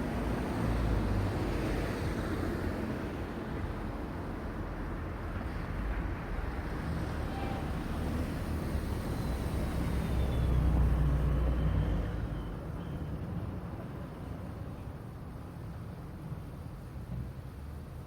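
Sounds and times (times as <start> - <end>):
steady traffic: 0.0 - 18.0.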